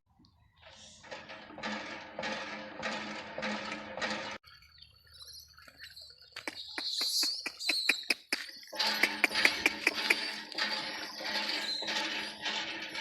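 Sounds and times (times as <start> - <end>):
birds chirping: 4.5 - 11.9.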